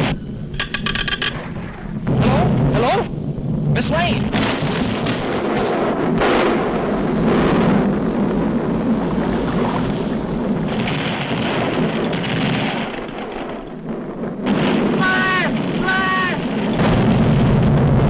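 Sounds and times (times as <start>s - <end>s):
deep volcano rumbling: 0.0s - 18.0s
heavy blasts: 1.3s - 18.0s
hissing rush: 6.9s - 17.1s.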